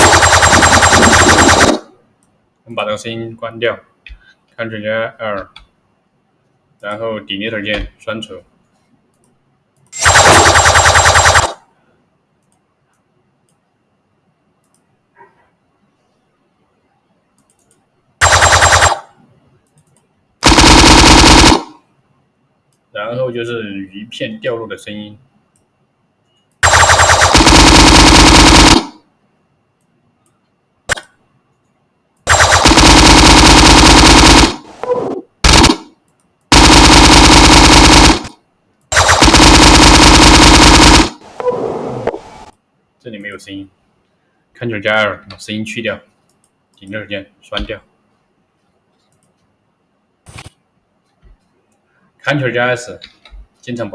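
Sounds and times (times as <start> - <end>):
rapid-fire rattling sound effect: 26.6 - 29.0, 32.3 - 34.8, 35.4 - 35.8, 36.5 - 38.3, 38.9 - 41.2.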